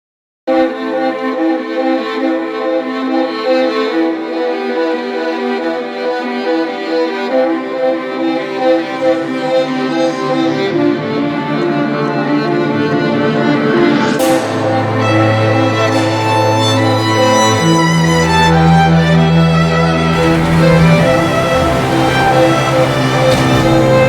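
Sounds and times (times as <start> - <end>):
violin playing even notes: 0.5 - 24.0
lower strings: 0.8 - 24.0.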